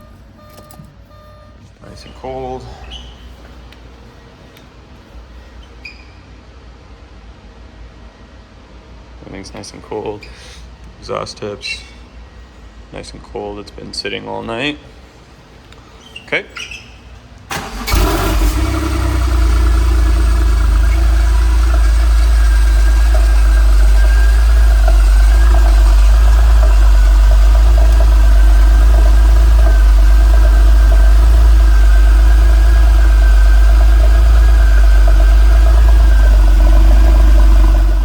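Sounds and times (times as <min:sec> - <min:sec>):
car engine idling: 0:17.5 - 0:38.0.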